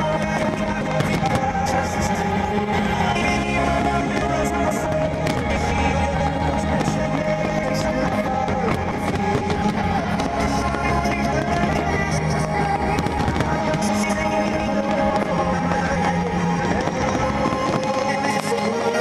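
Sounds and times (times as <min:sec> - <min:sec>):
fireworks bursting and crackling: 0:00.0 - 0:19.0
loud music: 0:00.0 - 0:19.0.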